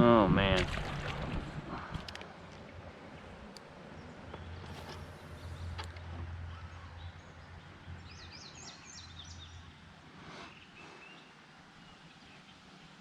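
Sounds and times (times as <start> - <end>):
steady low rumble: 0.0 - 10.2
songbird chirping: 2.2 - 13.0.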